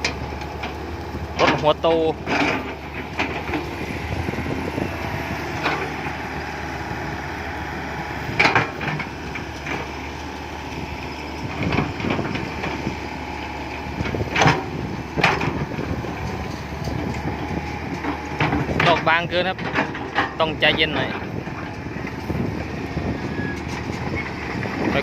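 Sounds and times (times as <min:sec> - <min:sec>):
excavator diesel engine running: 0:00.0 - 0:25.0
sharp clunks and knocks: 0:02.2 - 0:03.8, 0:05.5 - 0:06.2, 0:08.3 - 0:09.9, 0:14.0 - 0:21.8.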